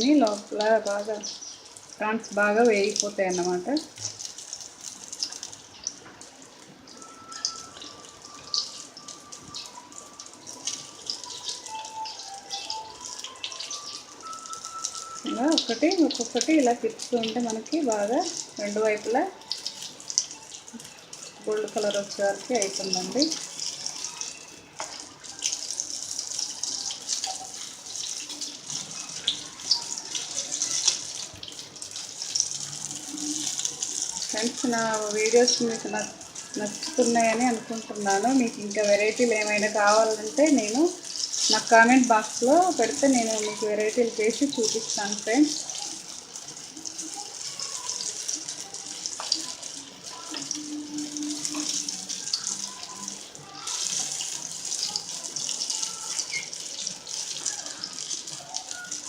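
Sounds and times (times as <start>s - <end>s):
fritters deep-frying in oil: 0.0s - 59.0s.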